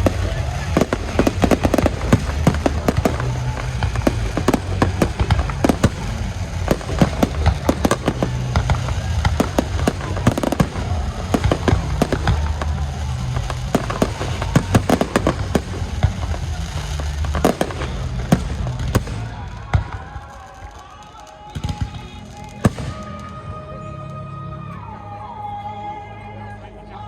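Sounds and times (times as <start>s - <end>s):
steady low rumble: 0.0s - 20.0s
fireworks bangs and crackles: 0.0s - 24.0s.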